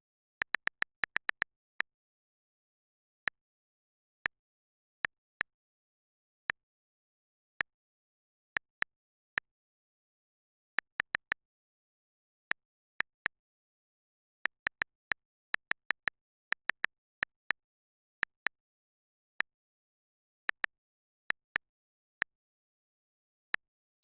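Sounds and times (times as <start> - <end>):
phone keyboard key clicks: 0.1 - 1.8, 7.3 - 11.6, 12.2 - 23.7.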